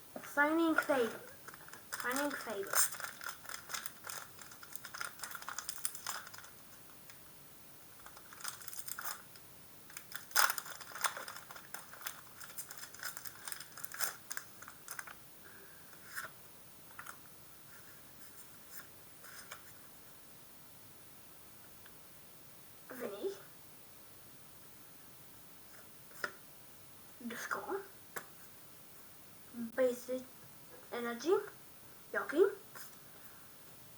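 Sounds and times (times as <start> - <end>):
cards and packaging handled: 0.6 - 6.6, 8.0 - 15.2
crinkly rustles: 0.6 - 6.9, 8.0 - 15.2.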